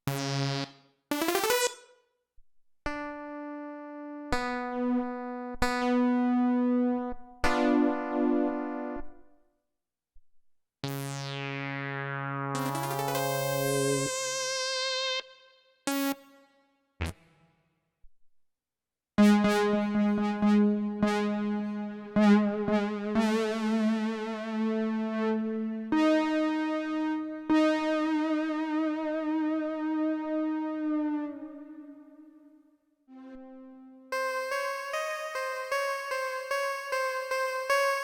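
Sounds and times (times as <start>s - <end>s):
synthesizer chords: 10.8s - 15.2s, 19.2s - 38.0s.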